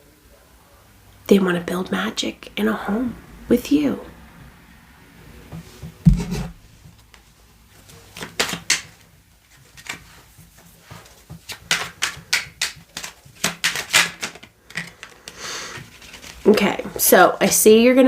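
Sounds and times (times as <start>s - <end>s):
knock against table: 6.0s - 6.6s
cards shuffling: 7.8s - 16.6s.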